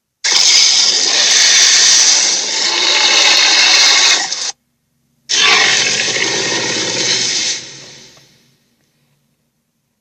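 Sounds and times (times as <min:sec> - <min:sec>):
toy electronic rushing noise: 0:00.2 - 0:04.6.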